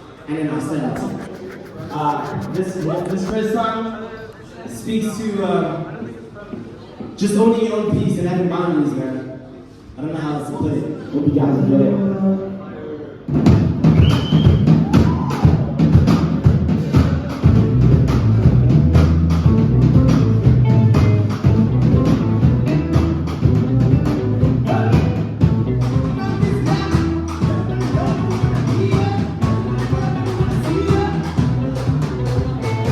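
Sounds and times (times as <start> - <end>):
heavy bass: 0.9 - 3.5, 14.9 - 32.9
drum beat: 1.0 - 3.4, 13.5 - 32.9
live rock song: 17.4 - 32.9.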